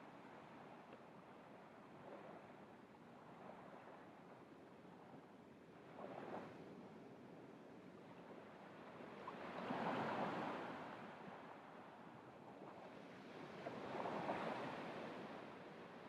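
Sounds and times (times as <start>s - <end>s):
small waves washing on beach: 8.3s - 16.0s.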